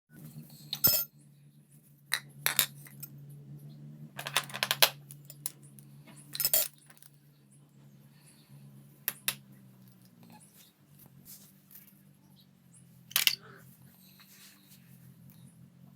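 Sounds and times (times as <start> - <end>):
faint low hum: 0.1 - 15.9
small hard objects clinking: 13.1 - 13.5.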